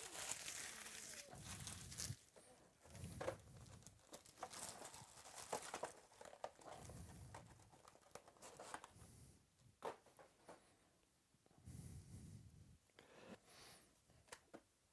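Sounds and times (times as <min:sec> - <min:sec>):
wrappers crinkling: 0:00.0 - 0:08.7.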